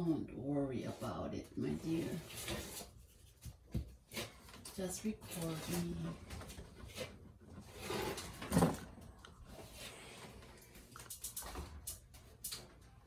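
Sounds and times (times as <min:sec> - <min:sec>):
scraping on drywall: 0:00.8 - 0:10.7.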